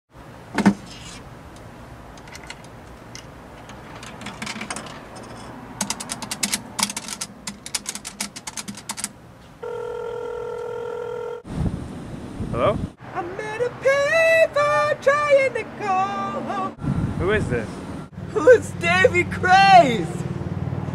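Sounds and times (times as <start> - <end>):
phone ringing tone: 9.6 - 11.5.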